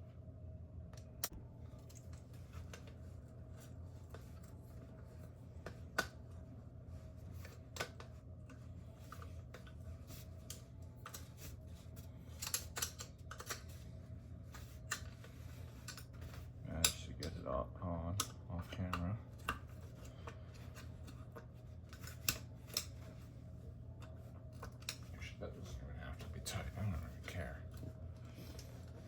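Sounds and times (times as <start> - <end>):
steady low hum: 0.0 - 29.0
clicks and scrapes of light parts: 7.3 - 13.8, 14.5 - 17.4, 18.2 - 25.1.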